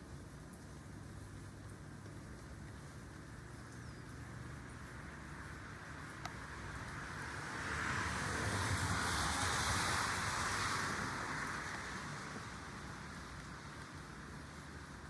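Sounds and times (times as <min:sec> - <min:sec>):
car tyres hissing on wet road: 0:04.5 - 0:15.0.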